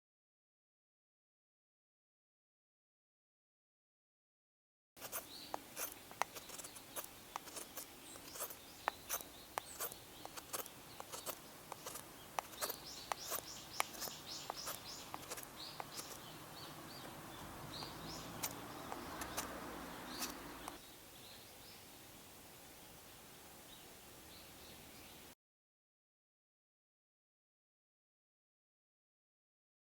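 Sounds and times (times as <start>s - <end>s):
small birds chirping: 5.0s - 25.4s.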